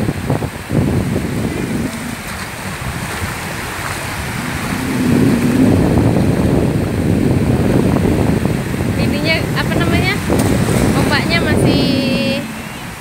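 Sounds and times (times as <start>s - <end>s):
sea waves breaking on beach: 0.0s - 13.0s.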